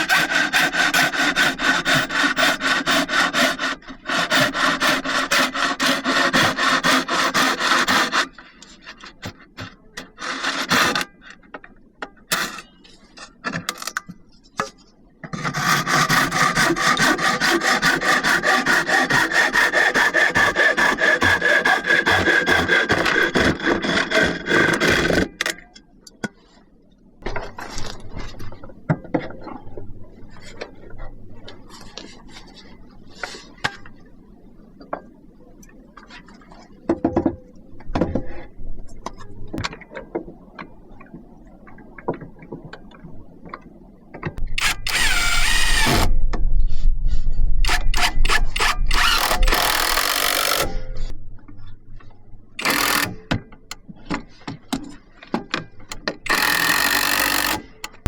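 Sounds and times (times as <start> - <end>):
wood being sawn: 0.0 - 8.4, 10.0 - 11.1, 15.4 - 25.4, 44.6 - 46.2, 47.7 - 50.7
power tool whining and clicking: 44.4 - 46.2, 47.6 - 50.8, 52.6 - 53.8, 55.9 - 58.0.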